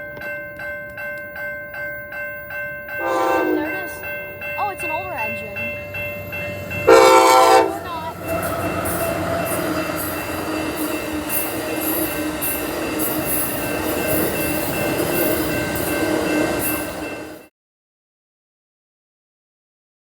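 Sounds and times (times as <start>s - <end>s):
train horn blast: 3.0s - 4.0s, 6.8s - 10.3s
train passing with rumbling hiss: 3.0s - 17.5s.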